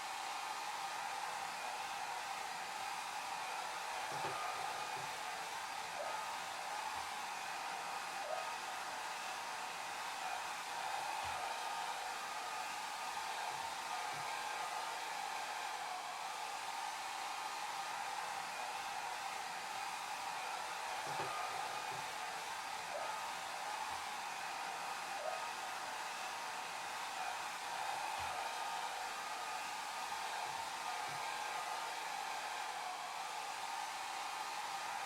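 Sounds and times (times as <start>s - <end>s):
hair dryer running: 0.0s - 35.0s.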